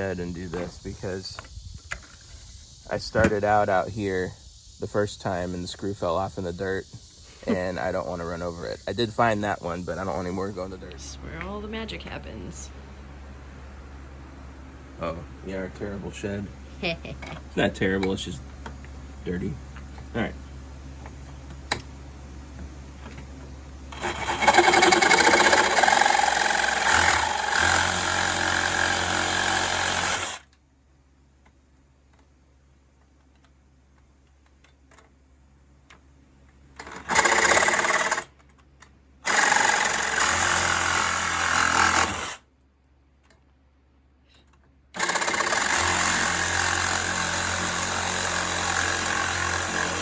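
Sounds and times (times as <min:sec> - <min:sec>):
power saw cutting steel screws: 0:23.9 - 0:30.5, 0:36.8 - 0:38.3, 0:39.2 - 0:42.4, 0:45.0 - 0:50.0.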